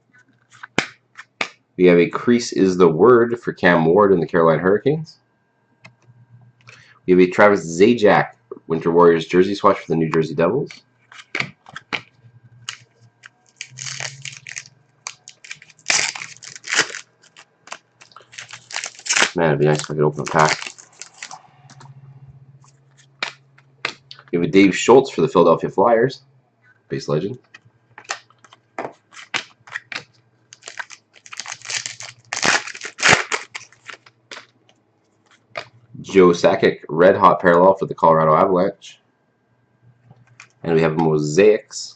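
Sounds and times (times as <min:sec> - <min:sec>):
wrapper crinkling and tearing: 0:11.1 - 0:12.0, 0:12.6 - 0:21.9, 0:28.0 - 0:34.5.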